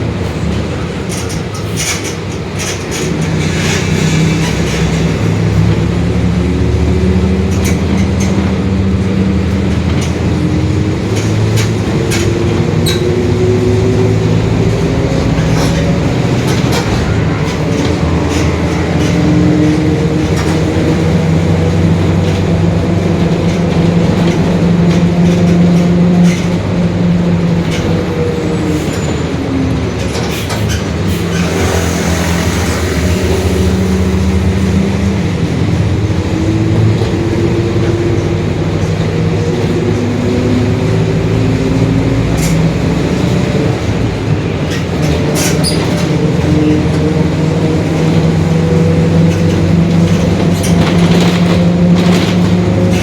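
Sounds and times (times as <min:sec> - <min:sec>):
bus body rattles: 0:00.0 - 0:53.0
diesel bus engine running: 0:00.0 - 0:53.0
differential growl and whine: 0:31.4 - 0:43.8.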